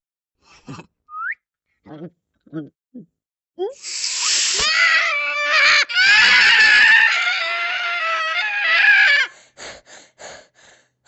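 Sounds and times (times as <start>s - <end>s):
cat yowling: 4.0s - 9.3s.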